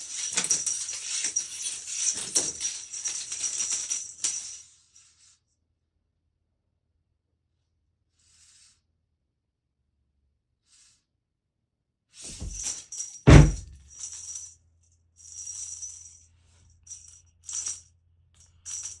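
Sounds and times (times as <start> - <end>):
rattling jingling shakes: 0.0 - 4.6, 12.3 - 14.5
heavy thump: 12.3 - 12.7, 13.3 - 13.8.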